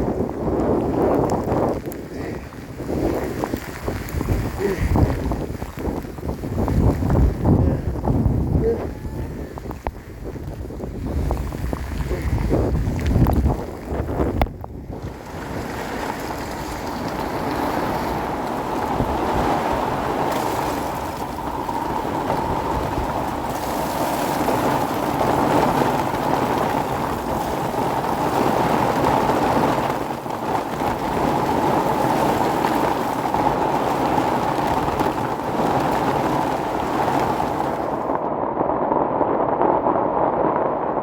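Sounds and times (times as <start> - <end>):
fast river water rushing: 15.0 - 38.2.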